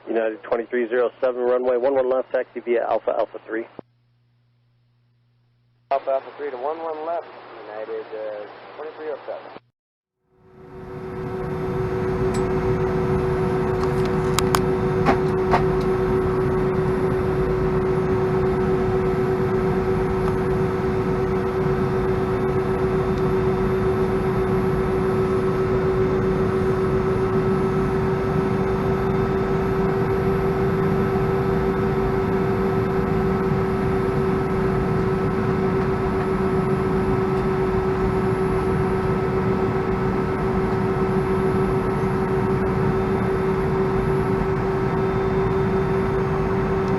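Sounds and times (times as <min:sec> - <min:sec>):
aircraft cabin engine hum: 0:10.4 - 0:46.9.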